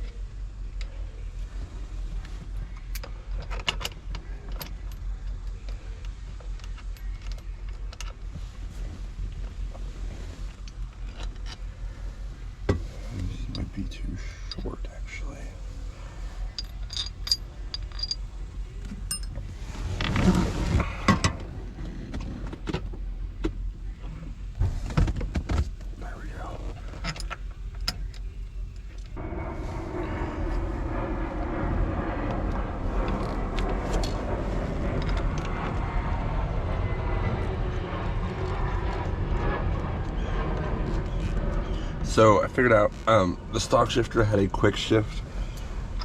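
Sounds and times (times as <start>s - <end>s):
steady low rumble: 0.0s - 46.0s
metal rubbing and scraping: 9.9s - 23.4s
metallic clicks and clinks: 16.4s - 18.2s.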